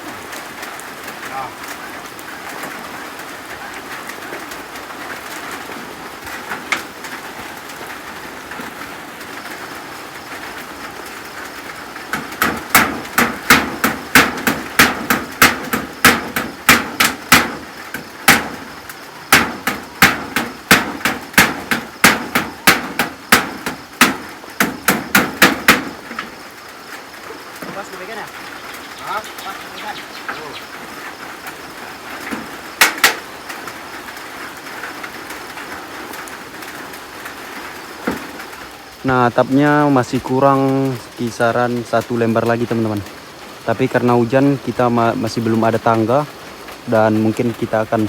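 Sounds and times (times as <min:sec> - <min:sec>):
heavy rain: 0:00.0 - 0:48.0
hammer driving nails: 0:12.2 - 0:17.6, 0:18.3 - 0:18.6, 0:19.3 - 0:26.3, 0:32.8 - 0:33.2.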